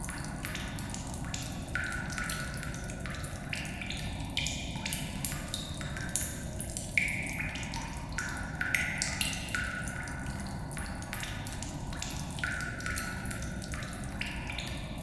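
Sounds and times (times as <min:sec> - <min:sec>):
echoing water drips: 0:00.0 - 0:15.0.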